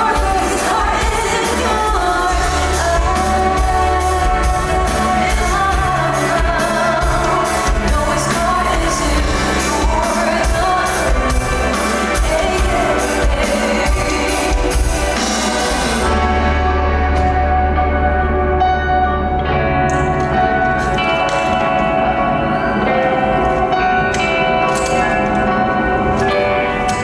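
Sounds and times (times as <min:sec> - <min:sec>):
woman singing pop ballad: 0:00.0 - 0:16.1
amplified backing music with drumbeat: 0:00.0 - 0:27.0.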